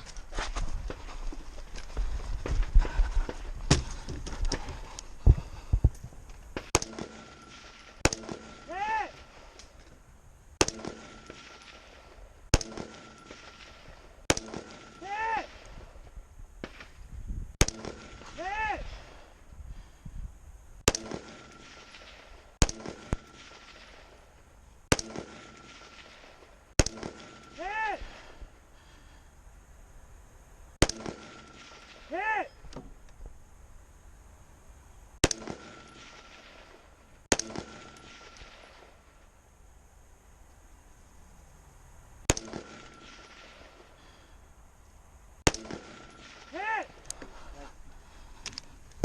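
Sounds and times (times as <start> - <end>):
rifle gunshots: 6.6 - 9.4, 10.6 - 15.6, 20.9 - 24.2, 24.9 - 28.2, 30.8 - 32.2, 35.2 - 39.1, 42.3 - 43.8, 45.4 - 47.0.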